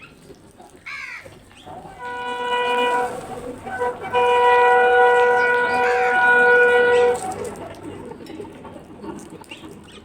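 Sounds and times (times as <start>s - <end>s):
horn blasts: 1.8s - 8.0s.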